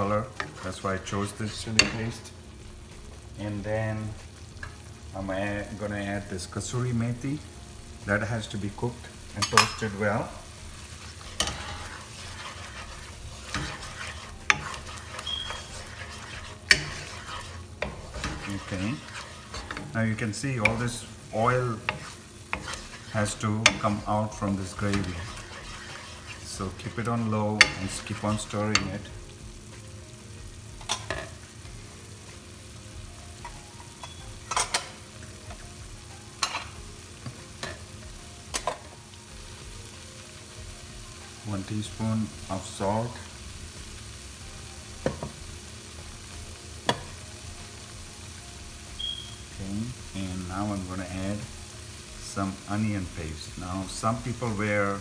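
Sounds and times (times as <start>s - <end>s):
spoon scraping and knocking pan: 0.0s - 3.1s, 8.4s - 29.9s, 30.5s - 39.8s, 44.8s - 48.1s
paste sizzling in oil: 0.0s - 55.0s
spoon knocking against pan: 9.4s - 9.9s, 45.0s - 45.4s, 46.8s - 47.2s.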